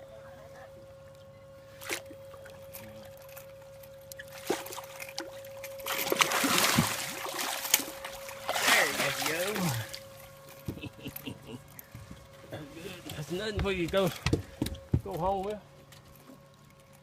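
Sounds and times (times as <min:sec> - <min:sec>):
faint steady hum: 0:00.0 - 0:17.0
fish splashing in water: 0:04.2 - 0:10.1.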